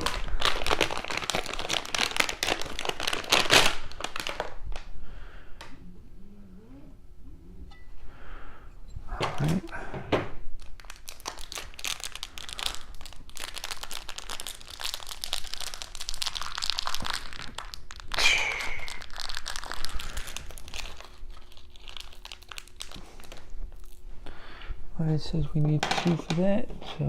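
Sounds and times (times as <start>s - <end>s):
plastic packaging crinkling: 0.0s - 4.9s, 10.6s - 24.0s.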